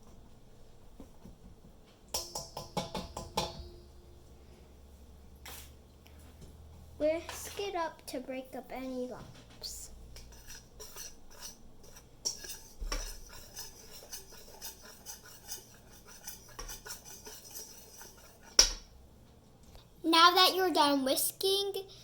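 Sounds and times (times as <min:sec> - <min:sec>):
whisk scraping a bowl: 0:10.2 - 0:18.9.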